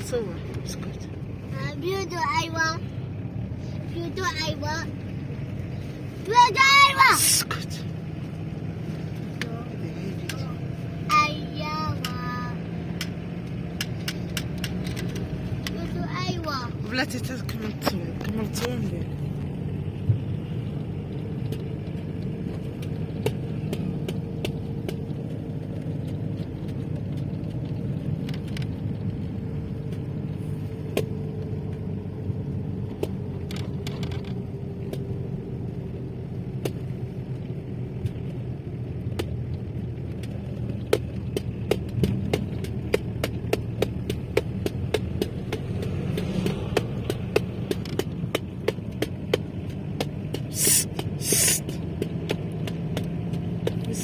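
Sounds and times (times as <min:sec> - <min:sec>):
road rumble: 0:00.0 - 0:54.0
vehicle engine hum: 0:00.0 - 0:54.0.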